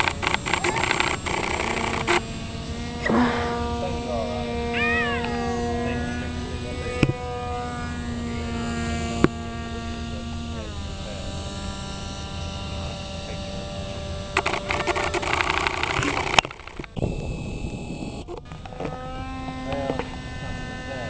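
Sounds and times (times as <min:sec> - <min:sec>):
crackling noise: 0:00.0 - 0:02.3, 0:14.4 - 0:18.9
electric motor whining: 0:00.0 - 0:21.0
sharp click: 0:14.4 - 0:17.0.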